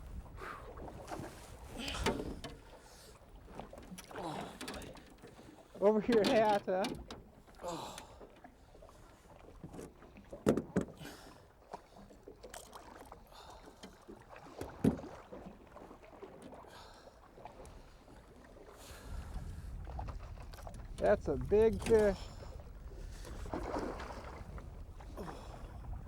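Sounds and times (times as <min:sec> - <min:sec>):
knocks against boat: 0:01.8 - 0:02.7, 0:06.0 - 0:07.5, 0:09.6 - 0:11.0, 0:14.5 - 0:15.3.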